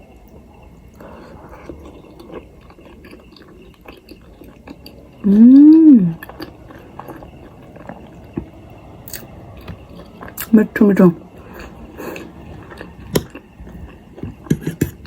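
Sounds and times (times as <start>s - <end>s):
woman chewing food: 0.0s - 10.6s, 11.2s - 15.0s
woman humming mmm: 5.2s - 6.3s.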